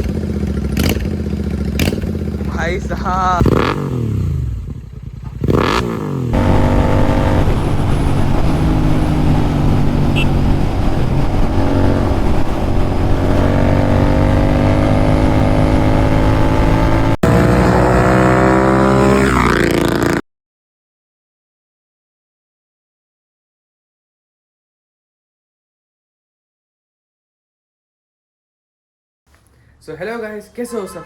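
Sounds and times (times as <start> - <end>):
motorcycle engine running: 0.0 - 20.2.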